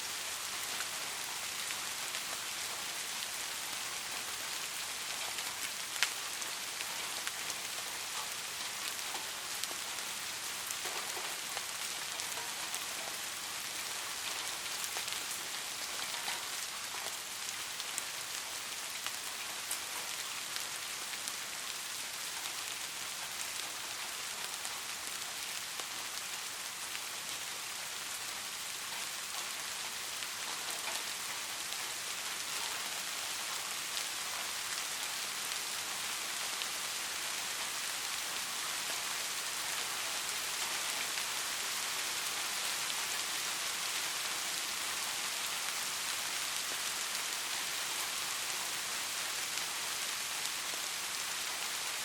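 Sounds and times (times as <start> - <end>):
steady rain hiss: 0.0 - 52.0
raindrop ticks: 10.6 - 13.2, 14.3 - 17.2, 28.8 - 34.8.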